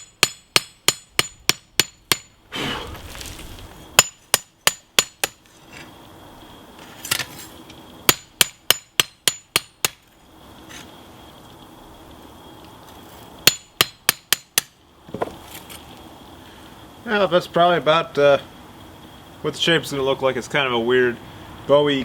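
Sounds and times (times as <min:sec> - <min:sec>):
hammer striking steel on anvil: 0:00.0 - 0:02.3.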